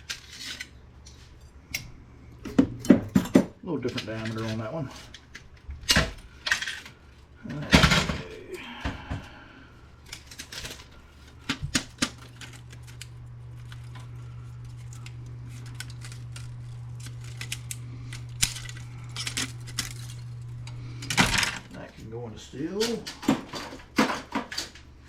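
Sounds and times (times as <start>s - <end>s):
steady low hum: 0.0s - 25.0s
printer parts clicking and clattering: 22.7s - 24.9s.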